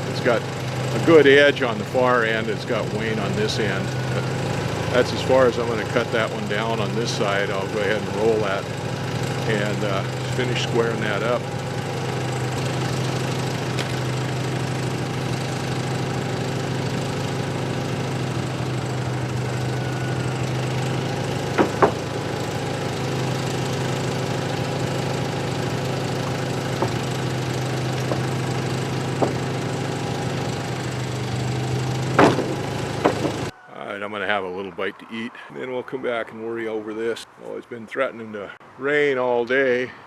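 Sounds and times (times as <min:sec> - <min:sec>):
sawmill engine idling: 0:00.0 - 0:33.6
sharp knocks: 0:12.5 - 0:14.2, 0:21.5 - 0:22.1, 0:26.8 - 0:27.2, 0:29.1 - 0:29.6, 0:32.1 - 0:33.5.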